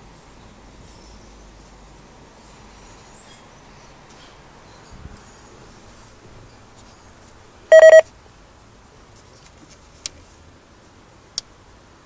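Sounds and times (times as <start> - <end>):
loud electronic beep: 7.7 - 8.0.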